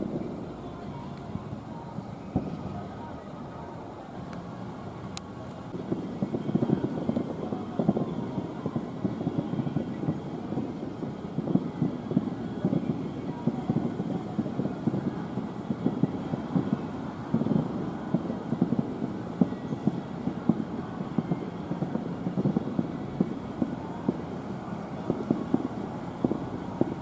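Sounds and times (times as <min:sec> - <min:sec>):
loud fireworks bangs: 0:00.0 - 0:03.2, 0:05.7 - 0:27.0
distant fireworks booms and pops: 0:02.4 - 0:02.6, 0:05.7 - 0:27.0.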